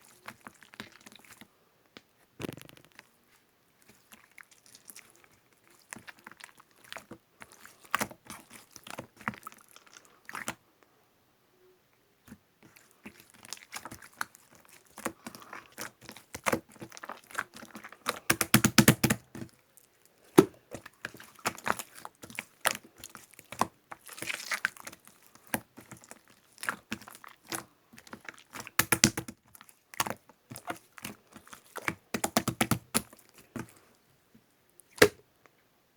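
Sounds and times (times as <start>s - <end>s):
slime sticky clicks and pops: 18.3s - 19.2s, 28.8s - 29.3s, 32.2s - 33.0s.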